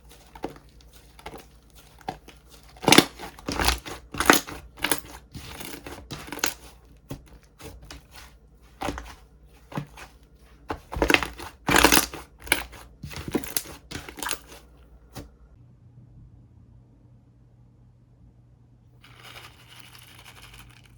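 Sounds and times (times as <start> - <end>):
slime squishing and crackling: 0.0 - 14.7.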